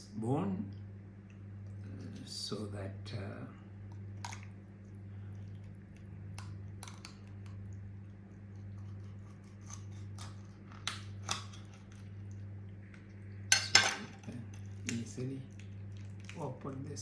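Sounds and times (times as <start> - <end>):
low electrical hum: 0.0 - 17.0
small bones snipping and cracking: 6.3 - 7.6, 9.7 - 12.0.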